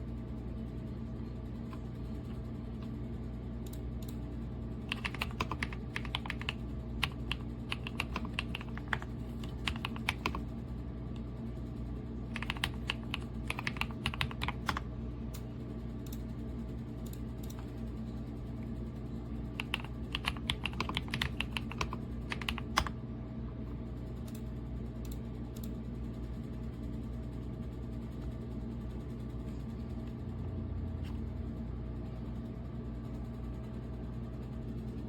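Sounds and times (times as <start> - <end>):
steady low hum: 0.0 - 35.0
mechanical keyboard typing: 4.9 - 10.4, 12.3 - 14.8, 19.5 - 22.9.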